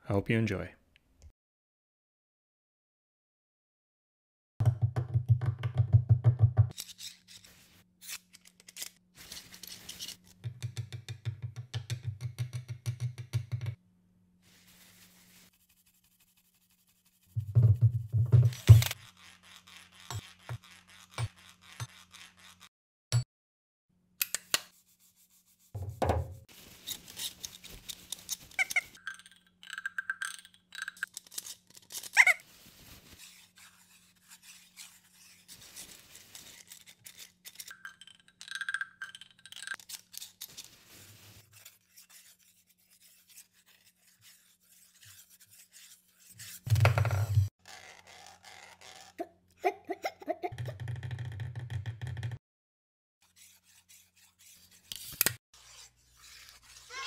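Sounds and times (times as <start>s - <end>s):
tools scraping on wood: 18.4s - 22.7s.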